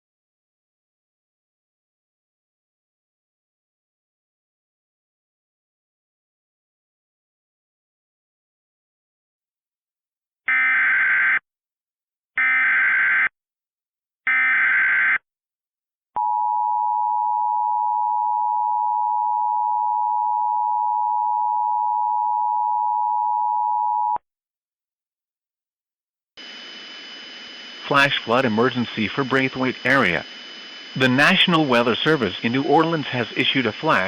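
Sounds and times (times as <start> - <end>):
digital data tone bursts: 26.4 - 34.0
steady two-tone alert signal: 26.4 - 34.0.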